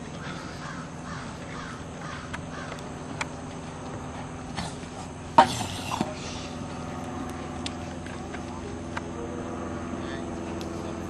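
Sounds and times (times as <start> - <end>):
bird calling: 0.1 - 3.0.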